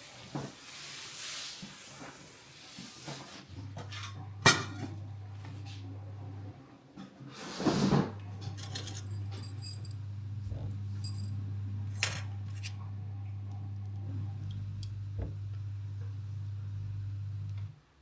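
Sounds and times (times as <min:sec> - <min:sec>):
low appliance hum: 0:03.3 - 0:18.0
small metal objects clinking: 0:08.6 - 0:10.0, 0:11.0 - 0:11.4.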